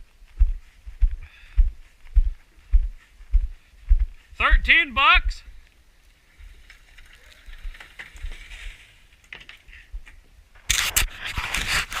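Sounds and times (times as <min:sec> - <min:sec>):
rustling against microphone: 0:05.5 - 0:12.0.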